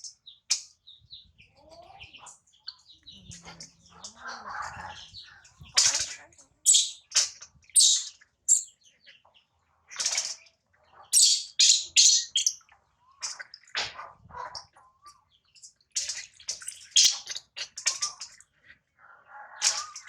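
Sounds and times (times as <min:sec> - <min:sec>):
baby monkey squeaks: 0:06.7 - 0:08.7, 0:11.2 - 0:12.6, 0:16.7 - 0:18.2.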